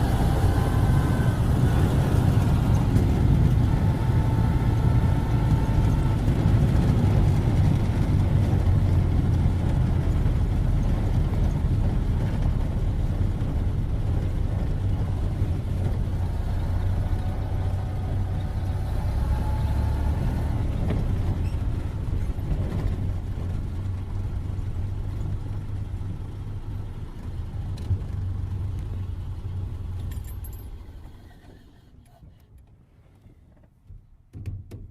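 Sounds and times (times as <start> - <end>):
car engine running: 0.0 - 31.4.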